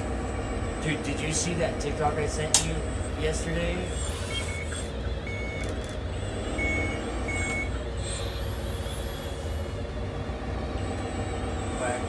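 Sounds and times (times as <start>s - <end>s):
reversing alarm beeps: 2.8s - 8.4s.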